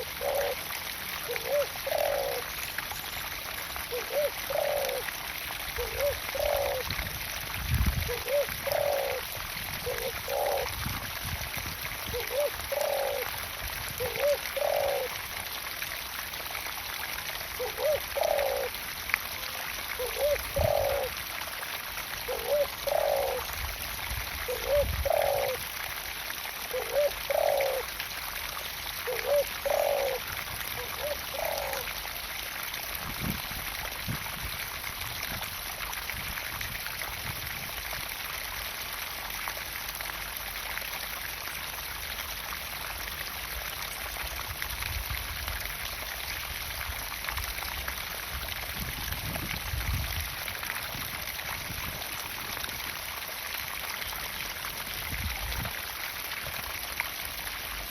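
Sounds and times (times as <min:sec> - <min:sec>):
water pouring and splashing: 0:00.0 - 0:57.9.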